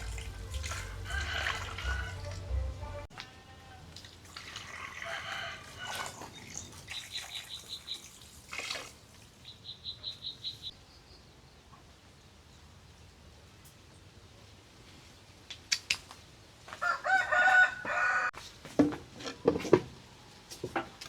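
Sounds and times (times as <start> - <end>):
running water: 0.0 - 3.1, 3.8 - 9.5
small bird chirping: 6.4 - 8.1, 9.4 - 11.3
light rustling and clatter: 18.4 - 21.0.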